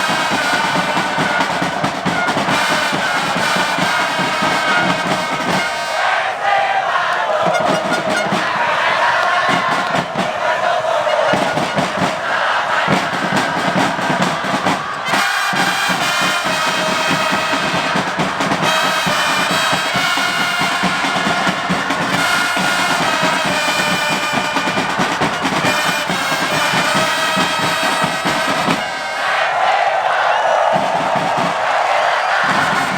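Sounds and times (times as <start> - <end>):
brass horn playing a tune: 0.0 - 6.3, 15.1 - 29.5
crowd noise: 0.0 - 32.9
drums beating: 0.0 - 32.9.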